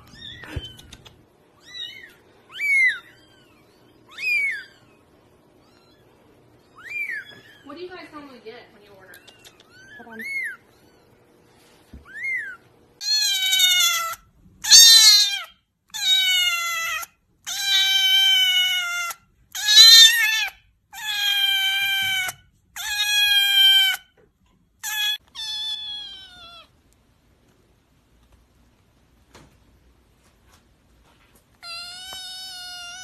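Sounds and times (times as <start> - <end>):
kitten meowing: 0.0 - 5.0, 6.7 - 7.6, 9.2 - 11.1, 12.0 - 24.0, 24.8 - 26.7, 31.6 - 33.0.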